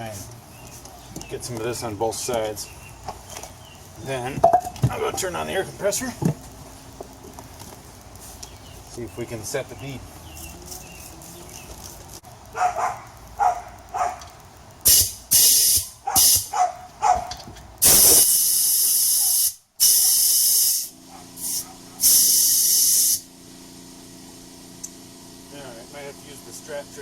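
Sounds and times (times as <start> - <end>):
compressed air hissing: 14.8 - 16.6, 17.8 - 23.3.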